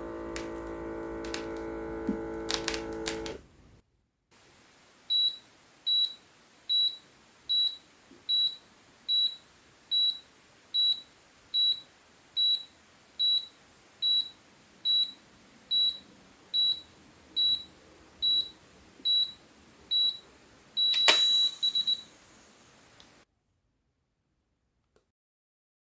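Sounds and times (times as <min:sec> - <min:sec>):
blood pressure monitor beeping: 0:05.1 - 0:10.2, 0:10.8 - 0:22.2
monitor click: 0:20.9 - 0:22.0.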